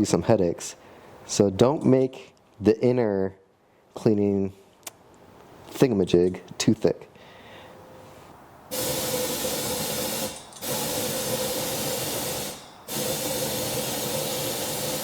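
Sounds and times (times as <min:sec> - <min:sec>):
compressed air hissing: 0:08.7 - 0:15.0.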